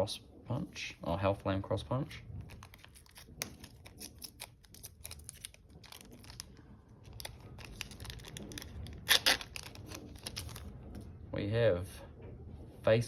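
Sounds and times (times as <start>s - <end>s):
wrapper crinkling: 2.2s - 11.0s
cards clicking and rustling: 2.4s - 10.7s.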